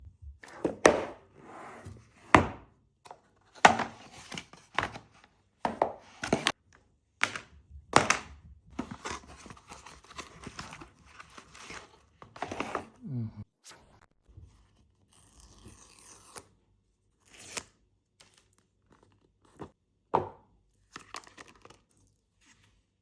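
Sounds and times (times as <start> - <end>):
box knocks and taps: 5.7 - 6.5.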